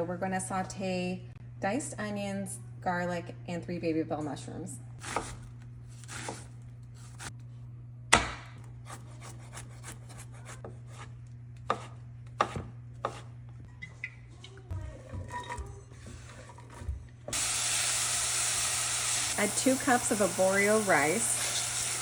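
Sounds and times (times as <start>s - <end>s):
knife chopping on cutting board: 5.0s - 7.3s, 8.1s - 13.3s.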